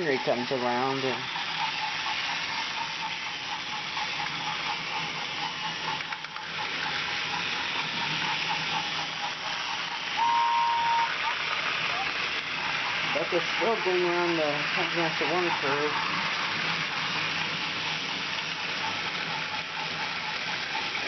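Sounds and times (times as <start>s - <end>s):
light regular ticking: 0.0s - 10.1s
toy train motor whir: 0.0s - 21.0s
wheels hissing on track: 0.0s - 21.0s
short whistle-like tone: 10.2s - 11.3s.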